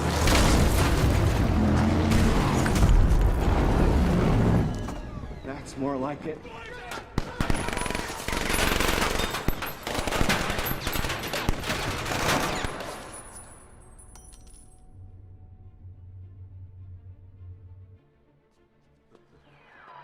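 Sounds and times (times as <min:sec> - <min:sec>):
rapid gunfire: 0:07.2 - 0:13.0.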